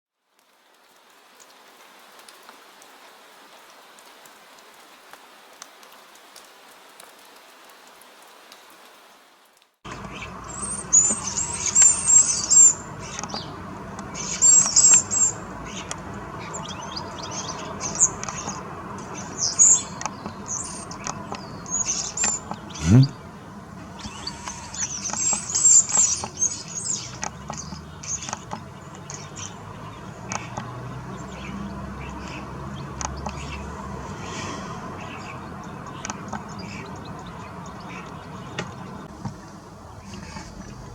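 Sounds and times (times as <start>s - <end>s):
soft rain: 0.1s - 40.9s
birds chirping: 9.9s - 40.9s.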